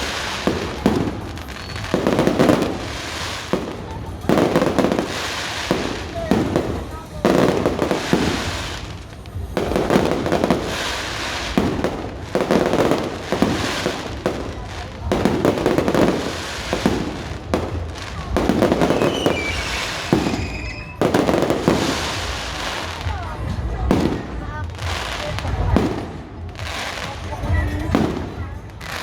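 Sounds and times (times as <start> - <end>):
whistling firework: 0.0 - 3.6, 18.3 - 22.9
fireworks booming and crackling: 0.0 - 29.0.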